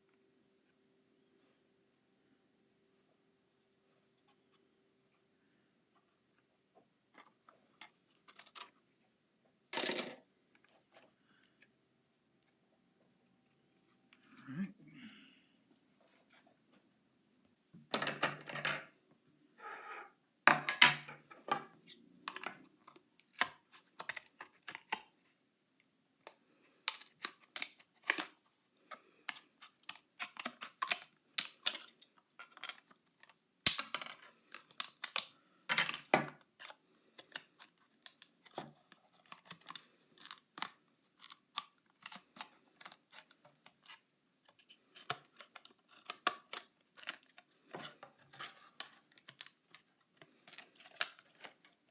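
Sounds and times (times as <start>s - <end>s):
scissors snipping plastic: 48.4s - 49.8s.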